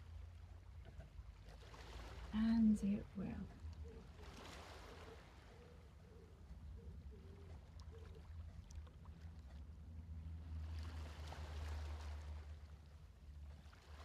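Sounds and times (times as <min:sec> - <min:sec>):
ocean waves washing: 0:02.2 - 0:03.6.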